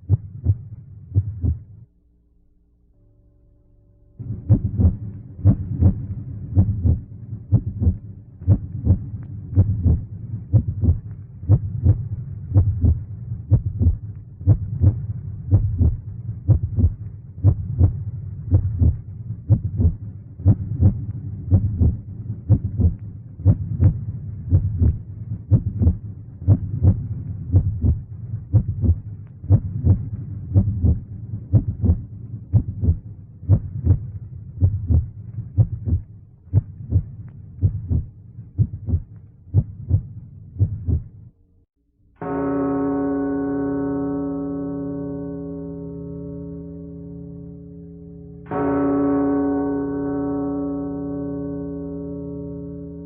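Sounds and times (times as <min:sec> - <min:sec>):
heartbeat thumps: 0:00.0 - 0:01.8, 0:04.2 - 0:41.2.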